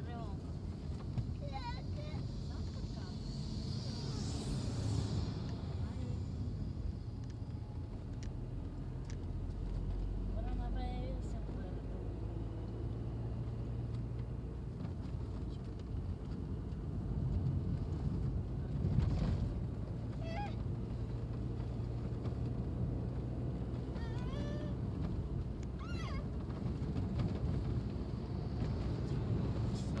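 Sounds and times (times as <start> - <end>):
engine and traffic drone: 0.0 - 30.0
high-pitched cries: 25.8 - 26.2.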